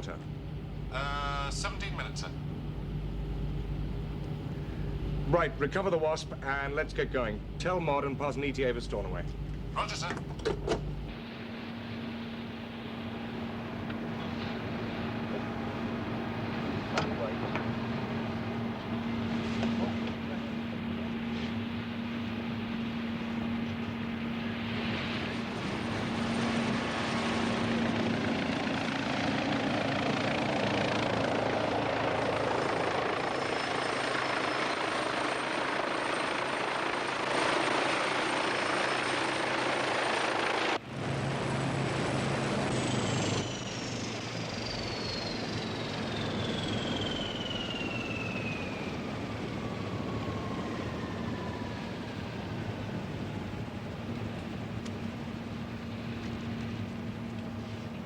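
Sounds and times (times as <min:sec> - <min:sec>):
helicopter rotor and turbine: 0:00.0 - 0:58.0
high whine falling in pitch: 0:42.3 - 0:49.6.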